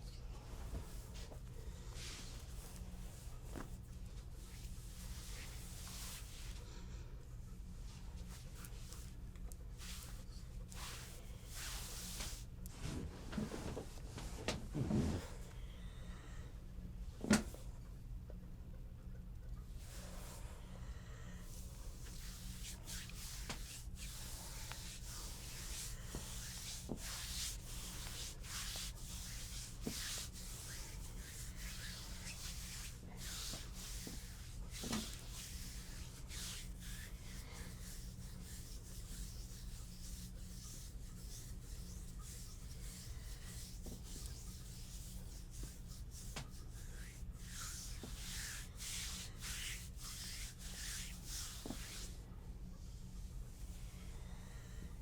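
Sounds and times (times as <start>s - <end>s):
steady low hum: 0.0s - 55.0s
hands rubbing over skin: 0.6s - 6.6s, 9.8s - 12.6s, 21.4s - 52.2s.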